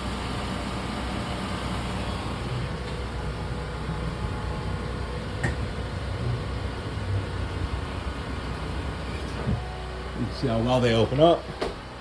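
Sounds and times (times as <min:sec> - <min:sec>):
mechanical drone of slide-out motor: 0:02.0 - 0:09.9.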